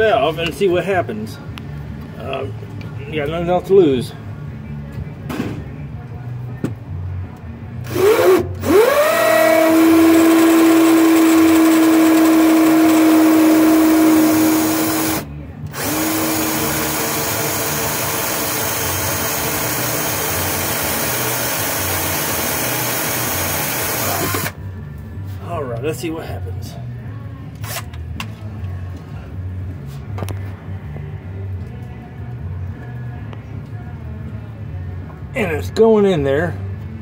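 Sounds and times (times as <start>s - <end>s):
power drill drilling plastic: 7.9s - 24.6s.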